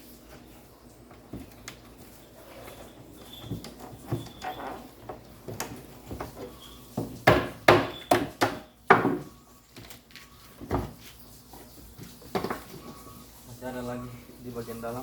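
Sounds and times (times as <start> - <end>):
wood knocking and cracking: 5.0 - 10.0.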